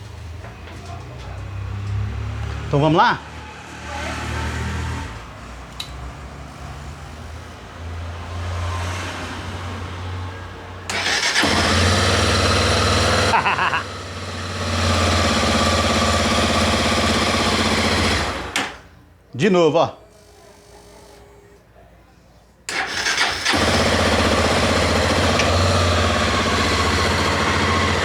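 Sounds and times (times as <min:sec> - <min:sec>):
electric starter whir: 0:10.9 - 0:18.9, 0:22.7 - 0:28.0
motorcycle engine running: 0:11.0 - 0:18.5, 0:23.4 - 0:28.0.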